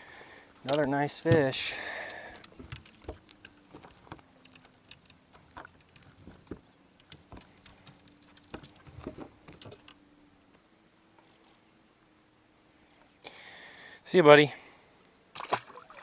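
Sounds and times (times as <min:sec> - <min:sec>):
faint steady hum: 0:00.0 - 0:16.0
light clicks and taps of handling fish: 0:00.6 - 0:10.6.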